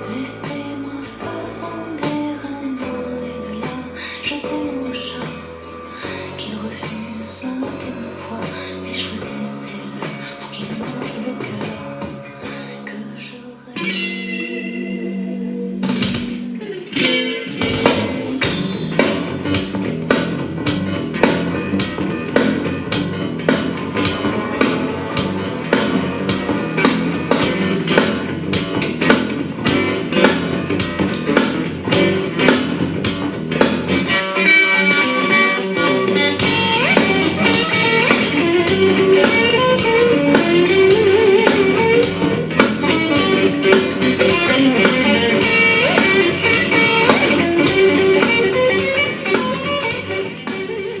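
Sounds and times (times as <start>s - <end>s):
bass guitar: 0.0s - 51.0s
electric guitar: 0.0s - 51.0s
drum beat: 15.8s - 16.6s, 17.6s - 34.2s, 36.4s - 50.9s.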